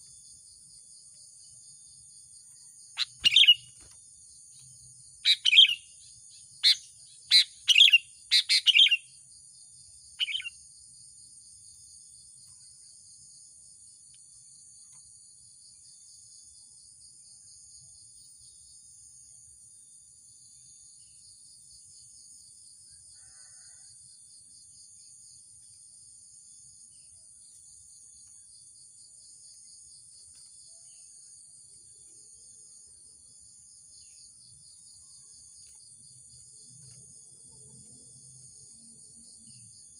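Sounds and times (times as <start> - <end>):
shrill insect chorus: 0.0 - 39.9
bird calls: 3.0 - 3.8, 5.2 - 5.8, 6.6 - 9.0, 10.2 - 10.5.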